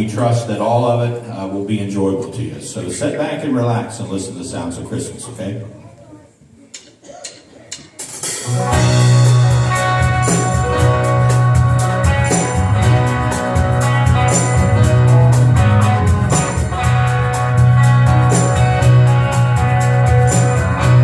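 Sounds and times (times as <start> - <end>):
guitar: 8.2 - 21.0
heavy bass line: 8.5 - 21.0.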